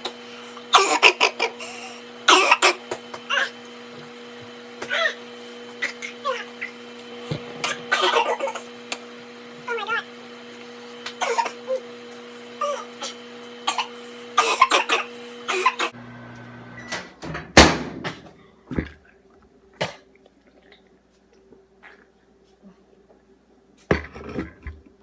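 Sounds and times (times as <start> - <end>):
microwave oven humming: 0.0 - 18.3
person coughing and hacking: 0.7 - 3.0, 7.6 - 8.7, 11.2 - 11.8, 12.6 - 16.0, 19.8 - 20.1.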